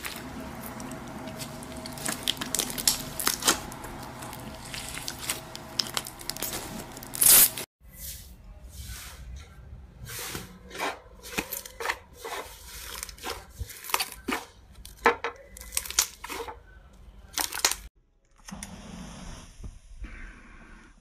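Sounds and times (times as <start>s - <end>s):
slime crackling and popping: 0.8s - 7.6s.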